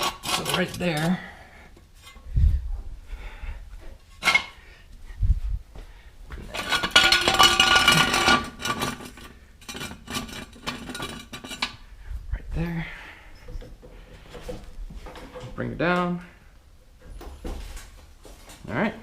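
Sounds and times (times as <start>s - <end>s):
metallic clanking and rattling: 6.5s - 11.8s.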